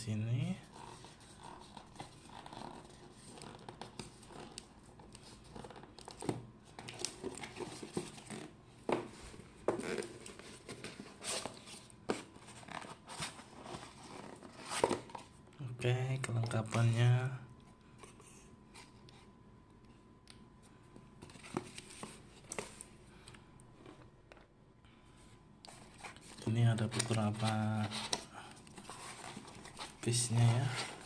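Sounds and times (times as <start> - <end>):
plastic and cardboard rustling: 0.8 - 15.4, 21.2 - 22.9, 25.7 - 31.0.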